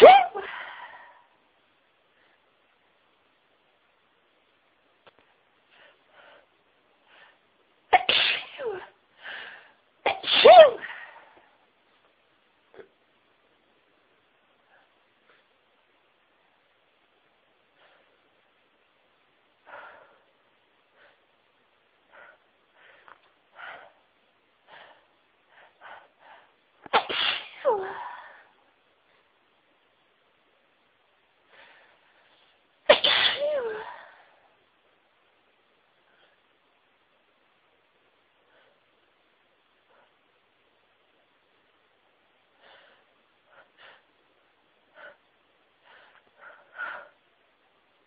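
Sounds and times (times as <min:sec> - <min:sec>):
woman sneezing: 0:00.0 - 0:00.8, 0:08.0 - 0:08.9, 0:10.1 - 0:11.2, 0:26.9 - 0:28.2, 0:32.9 - 0:34.0.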